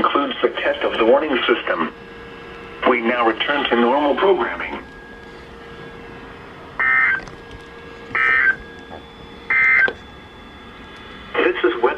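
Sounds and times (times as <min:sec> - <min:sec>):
faint steady hum: 0:00.0 - 0:11.9
warbling digital data tones: 0:02.8 - 0:11.9.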